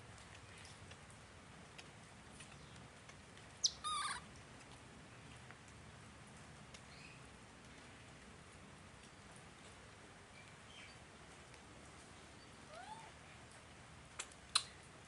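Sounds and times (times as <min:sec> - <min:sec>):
monkey squeaking and chattering: 0:03.6 - 0:04.2
faint ticks: 0:04.3 - 0:07.0.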